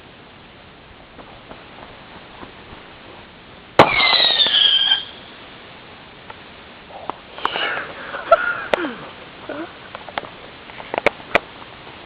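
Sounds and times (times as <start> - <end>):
firework whistling screech: 3.8 - 5.3.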